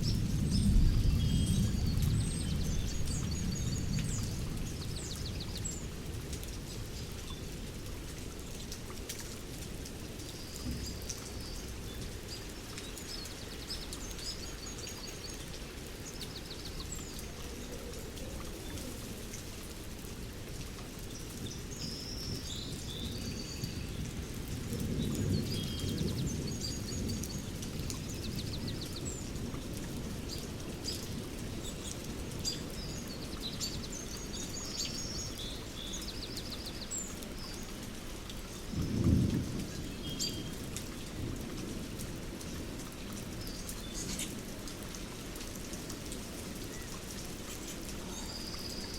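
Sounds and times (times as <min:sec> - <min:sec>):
distant thunder rumble: 0:00.0 - 0:07.2, 0:24.0 - 0:30.4, 0:38.4 - 0:43.0
rain falling in forest: 0:00.0 - 0:48.9.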